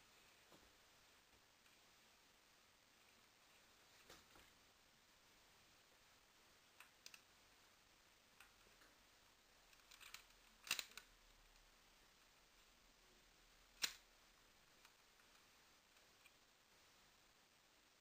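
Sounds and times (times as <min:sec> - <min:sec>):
plastic mechanism clicks and snaps: 0:09.7 - 0:11.1, 0:13.8 - 0:14.0.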